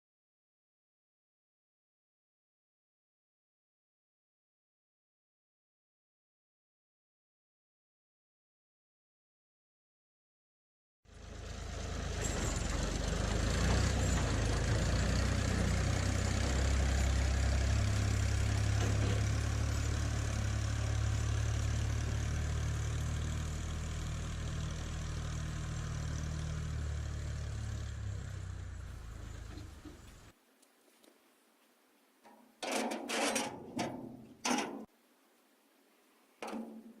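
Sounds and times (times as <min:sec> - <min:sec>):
tractor engine idling: 0:11.1 - 0:30.3.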